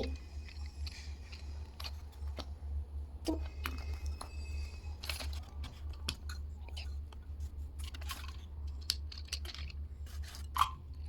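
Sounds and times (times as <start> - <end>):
steady low hum: 0.0 - 11.0
plastic toy pieces clicking: 7.8 - 9.8.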